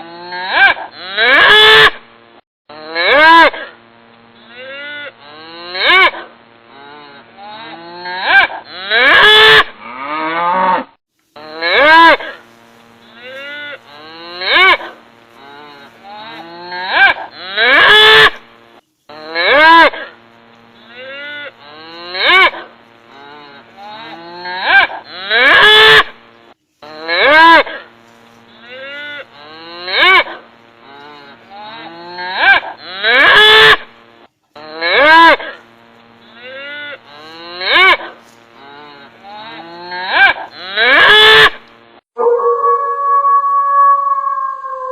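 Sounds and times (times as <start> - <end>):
cows mooing: 4.4 - 12.4, 13.0 - 18.4, 19.1 - 26.2, 26.8 - 33.9, 34.6 - 41.6.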